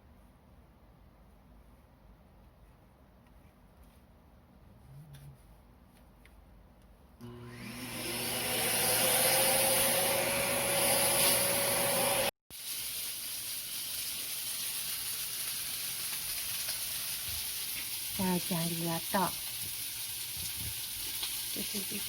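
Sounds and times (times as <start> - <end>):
vacuum cleaner running: 7.2 - 12.3.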